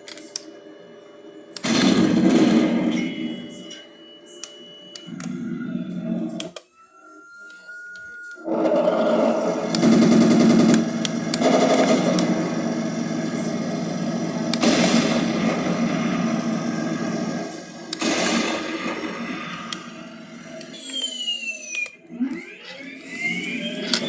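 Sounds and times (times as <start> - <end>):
simulated machine-gun fire from speaker: 1.6 - 3.4, 9.4 - 20.5.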